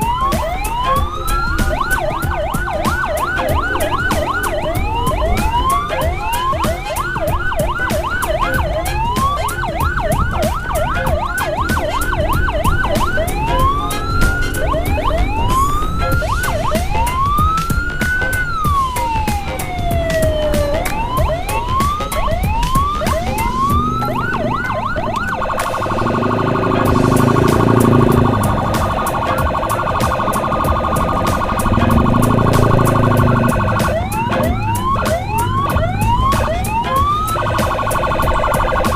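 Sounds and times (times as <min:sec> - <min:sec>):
electronic vehicle siren: 0:00.0 - 0:38.9
low blare: 0:10.2 - 0:38.9
steady pulsing tone: 0:20.2 - 0:38.9.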